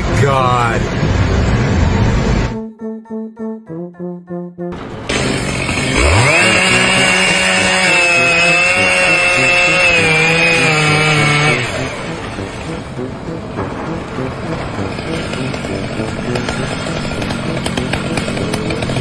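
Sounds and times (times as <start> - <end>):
power tool motor whining: 5.1 - 11.7.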